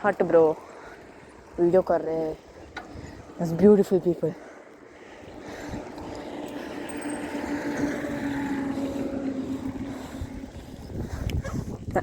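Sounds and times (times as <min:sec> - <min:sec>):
vehicle engine passing by: 0:05.3 - 0:11.3.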